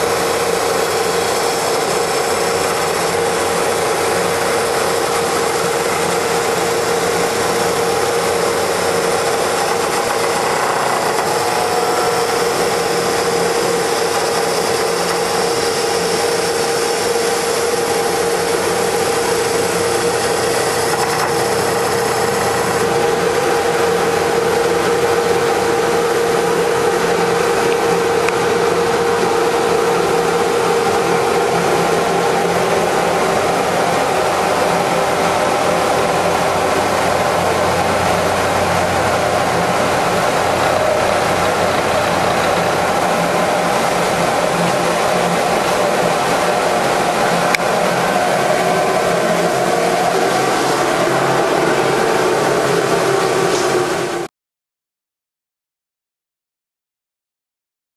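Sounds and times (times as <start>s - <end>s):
lathe machine humming: 0.0s - 54.3s.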